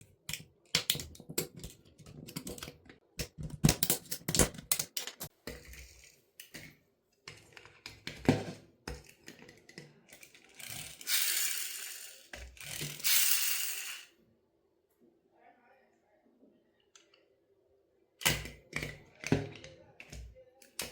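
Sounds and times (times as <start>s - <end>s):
toy car cracking and snapping: 10.1s - 14.1s.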